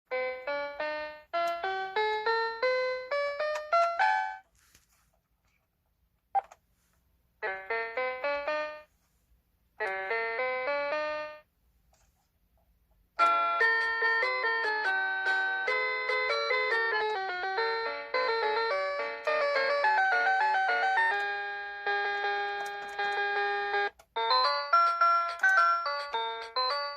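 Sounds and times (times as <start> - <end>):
electronic keyboard playing notes: 0.1 - 4.4, 7.4 - 8.9, 9.8 - 11.5, 13.2 - 26.9.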